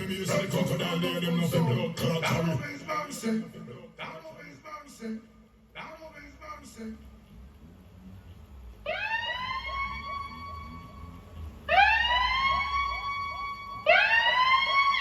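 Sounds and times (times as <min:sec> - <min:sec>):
siren wails: 0:08.8 - 0:15.0.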